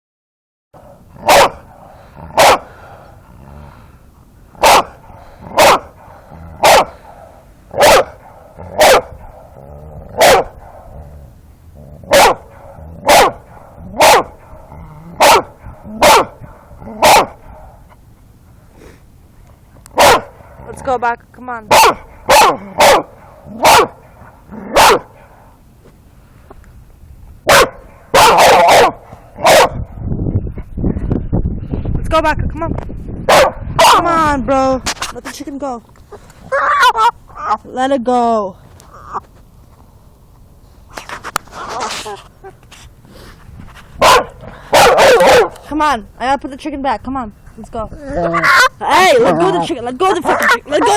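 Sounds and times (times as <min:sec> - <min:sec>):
dog barking: 0:01.2 - 0:01.8, 0:02.4 - 0:02.8, 0:04.6 - 0:09.5, 0:10.2 - 0:10.9, 0:12.1 - 0:14.4, 0:15.2 - 0:17.8, 0:19.9 - 0:20.5, 0:21.7 - 0:25.3, 0:27.5 - 0:29.8, 0:33.3 - 0:34.1, 0:36.5 - 0:37.6, 0:44.0 - 0:45.6, 0:48.3 - 0:49.6, 0:50.2 - 0:50.9.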